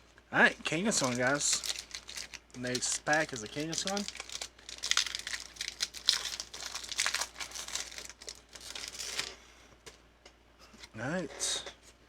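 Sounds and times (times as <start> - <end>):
foil wrapper crinkling and tearing: 0.9 - 9.3.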